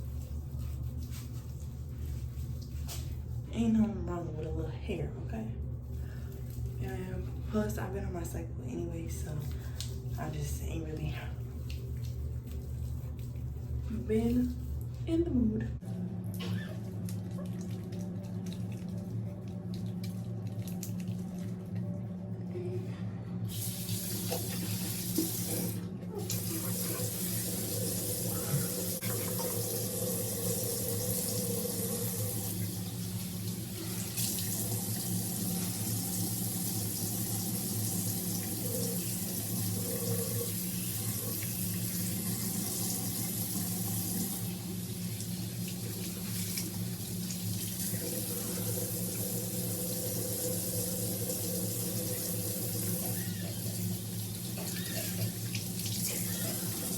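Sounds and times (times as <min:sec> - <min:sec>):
tap water pouring into sink: 0:23.5 - 0:56.9.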